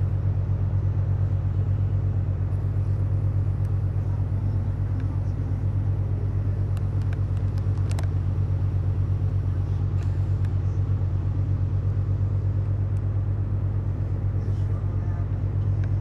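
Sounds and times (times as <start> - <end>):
vehicle engine rumble: 0.0 - 16.0
light clicks: 6.7 - 8.2.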